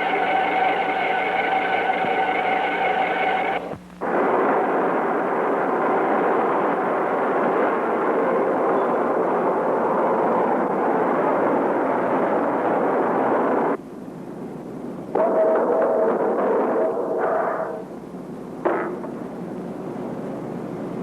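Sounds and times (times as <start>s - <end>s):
machinery roaring: 0.0s - 3.8s.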